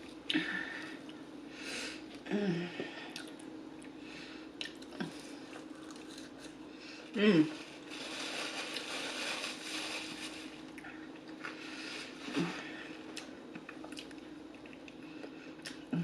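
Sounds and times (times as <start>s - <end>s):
crunchy chewing: 4.6s - 6.6s
person humming: 7.2s - 7.7s.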